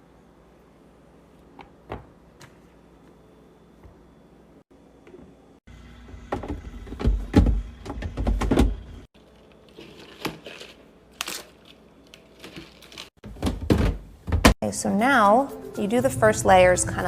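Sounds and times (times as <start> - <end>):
objects knocking and thudding: 6.3 - 9.1, 13.2 - 14.6.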